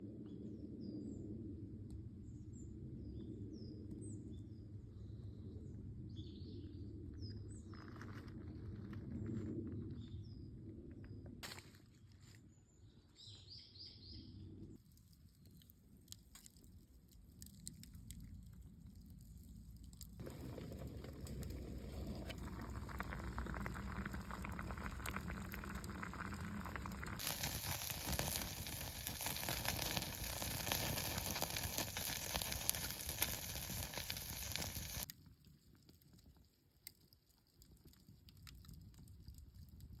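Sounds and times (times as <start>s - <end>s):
wood fire crackling: 16.1s - 40.0s
food sizzling: 22.2s - 35.1s
even hiss: 26.4s - 35.1s.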